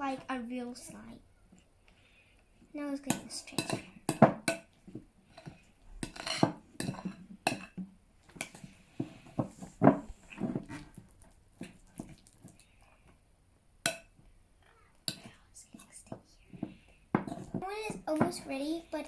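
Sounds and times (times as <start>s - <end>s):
spoon scraping and clinking bowl: 5.4s - 7.8s, 17.2s - 17.6s.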